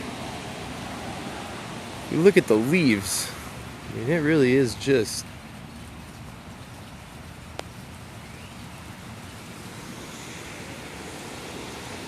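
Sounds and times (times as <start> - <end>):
floodwater rushing: 0.0 - 12.0.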